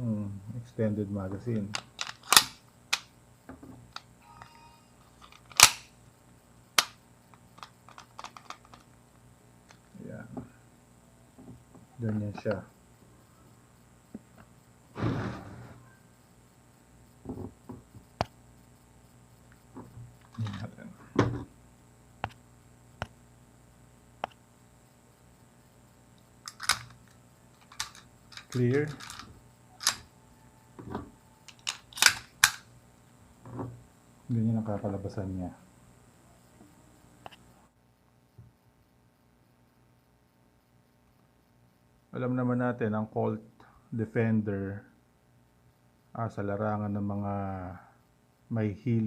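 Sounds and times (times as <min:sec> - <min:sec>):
pistol metallic clicks: 0:01.8 - 0:03.1, 0:05.3 - 0:05.9, 0:26.5 - 0:27.0, 0:27.6 - 0:30.1, 0:31.5 - 0:32.7.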